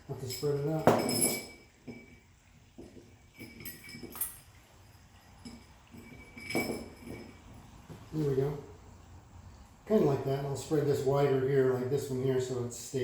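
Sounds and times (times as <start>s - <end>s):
metal chain links clinking: 0.0s - 8.4s.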